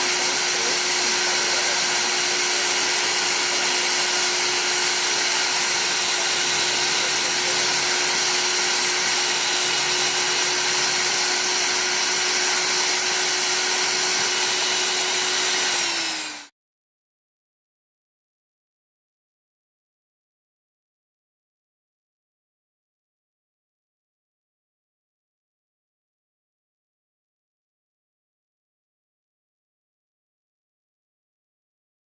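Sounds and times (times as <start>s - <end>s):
engraving machine spindle whine: 0.0s - 16.5s.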